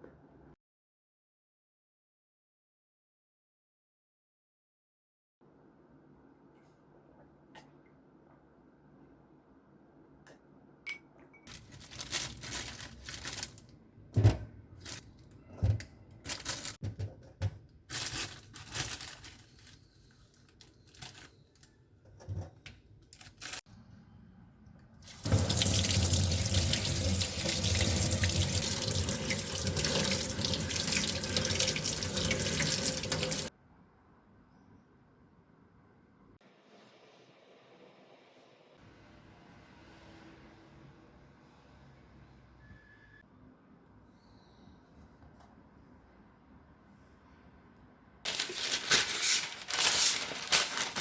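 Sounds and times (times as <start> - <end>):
faucet running: 25.0 - 33.5
splashing in sink: 25.0 - 33.5.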